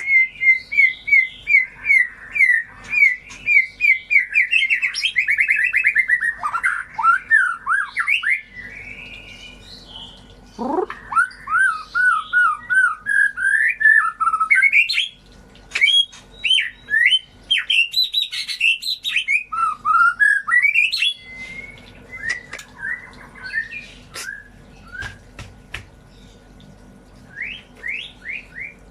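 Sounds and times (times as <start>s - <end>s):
bird singing whistled phrases: 10.6s - 15.1s, 15.8s - 25.2s, 27.3s - 28.8s
bird short calls and clicks: 21.7s - 22.8s, 24.1s - 25.2s.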